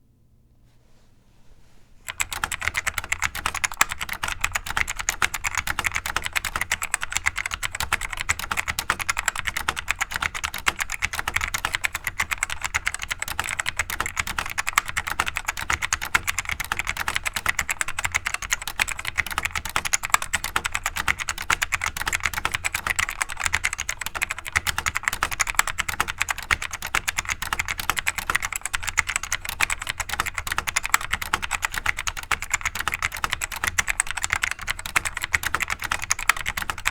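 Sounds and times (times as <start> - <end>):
fast typing on clicky keyboard: 2.1 - 36.9.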